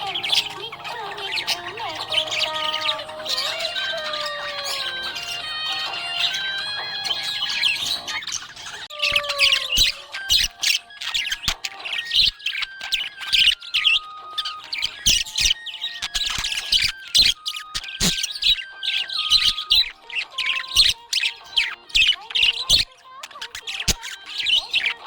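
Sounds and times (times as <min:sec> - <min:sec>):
melody of held notes: 0:00.0 - 0:11.0
budgerigars chirping: 0:00.0 - 0:25.0.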